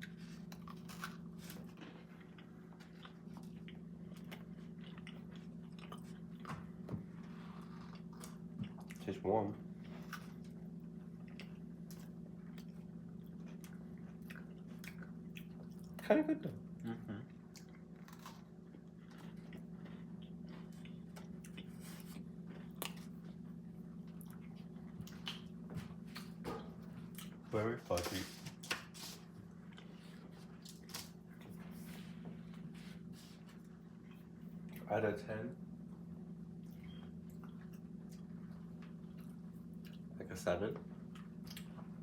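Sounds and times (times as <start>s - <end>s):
crunching and chewing: 0.0s - 34.9s, 36.2s - 42.0s
steady low hum: 0.0s - 42.0s.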